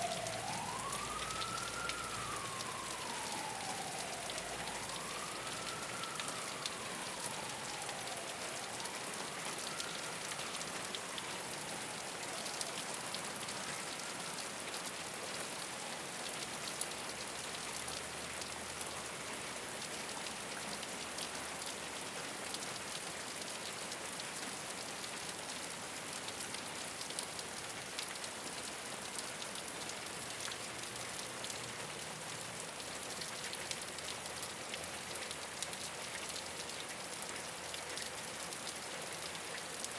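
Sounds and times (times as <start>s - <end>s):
faint siren wailing: 0.0s - 20.4s
rain pattering on a roof: 0.0s - 39.9s.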